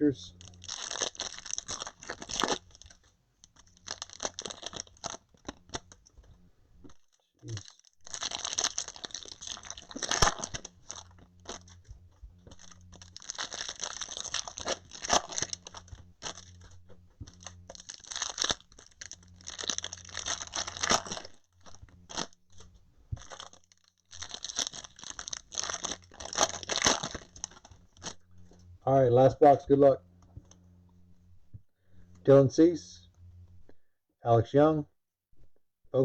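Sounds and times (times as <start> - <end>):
plastic wrap tearing and crinkling: 0.3 - 6.1, 6.9 - 28.2.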